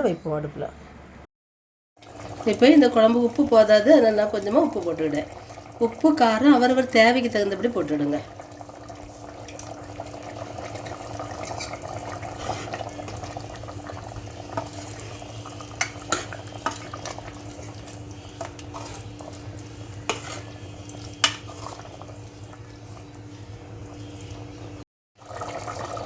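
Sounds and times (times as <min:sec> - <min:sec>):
spoon stirring in a pot: 0:08.4 - 0:23.2.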